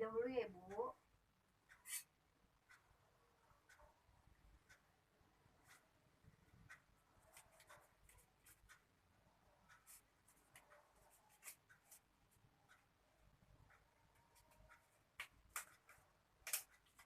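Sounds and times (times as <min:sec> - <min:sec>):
gloves rustling and clicking: 0:06.8 - 0:08.9, 0:09.7 - 0:12.9, 0:13.7 - 0:17.0.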